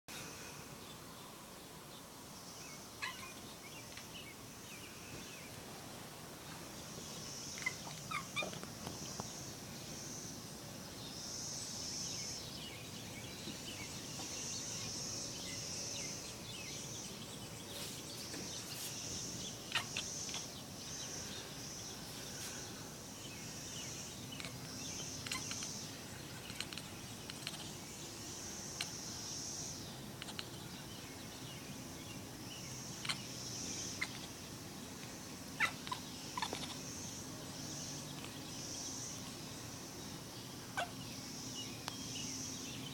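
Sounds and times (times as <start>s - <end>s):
cat chattering: 3.0s - 3.4s, 7.6s - 8.6s, 19.7s - 20.5s, 25.2s - 25.8s, 26.4s - 27.8s, 30.2s - 30.5s, 33.0s - 33.3s, 33.9s - 34.4s, 35.6s - 36.9s.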